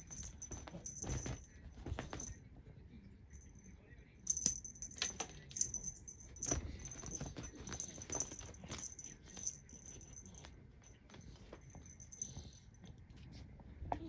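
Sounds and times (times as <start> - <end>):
light taps and rustles: 0.0 - 2.4
small bell jingling: 0.0 - 2.4, 3.3 - 12.8.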